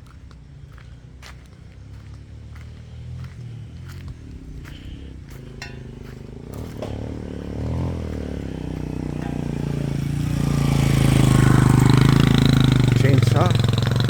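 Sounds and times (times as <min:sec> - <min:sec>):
chainsaw running: 0:03.2 - 0:14.0.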